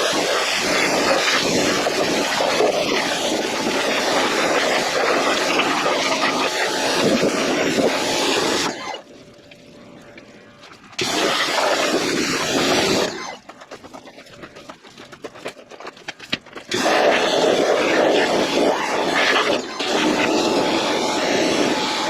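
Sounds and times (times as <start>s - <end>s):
pressure washer spraying water: 0.0s - 9.0s, 11.0s - 13.4s, 16.6s - 22.0s
scattered crackles: 8.6s - 19.8s.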